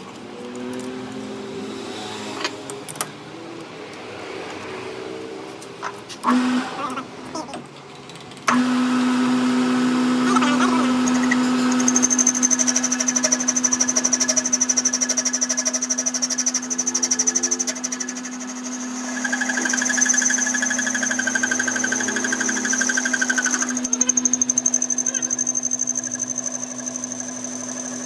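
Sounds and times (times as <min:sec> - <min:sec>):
machine humming: 0:08.5 - 0:28.0
high whine: 0:11.0 - 0:28.0
rapid even ticking: 0:11.7 - 0:28.0.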